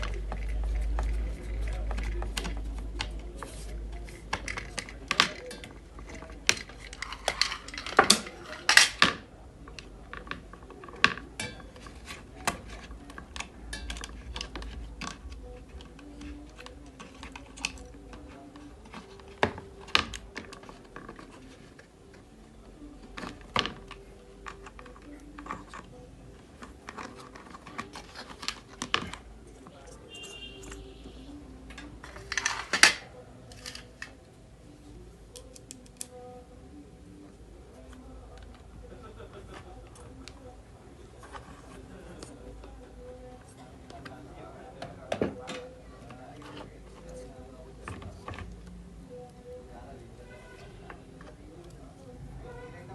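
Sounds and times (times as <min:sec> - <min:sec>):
small tools clicking and tapping: 0:00.0 - 0:22.3, 0:23.0 - 0:30.9, 0:35.3 - 0:36.2.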